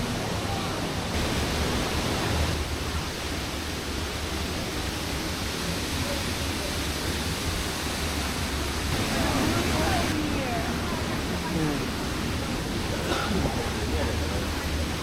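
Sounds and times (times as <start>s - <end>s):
waterfall rushing: 0.0s - 15.0s.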